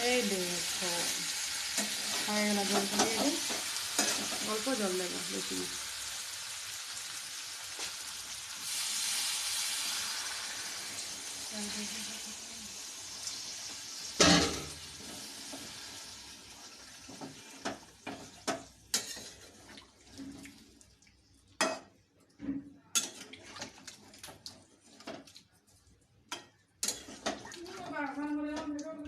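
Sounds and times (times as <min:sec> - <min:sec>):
water hissing in hot pan: 0:00.0 - 0:19.7.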